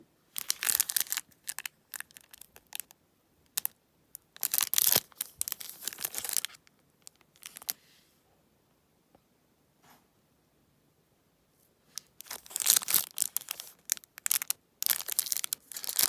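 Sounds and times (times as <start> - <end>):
card pack wrapper tearing: 0.4 - 2.8, 4.4 - 6.6, 12.2 - 16.0.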